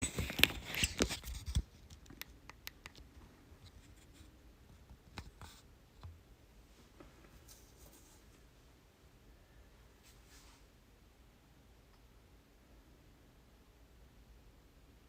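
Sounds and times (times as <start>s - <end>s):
light clicks and taps: 0.2s - 4.0s.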